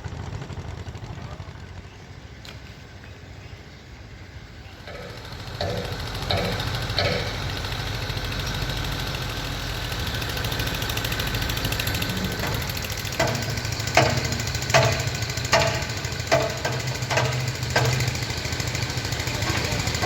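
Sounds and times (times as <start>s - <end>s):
construction machinery engine: 0.0s - 20.0s
ringing metal strikes: 4.9s - 7.8s.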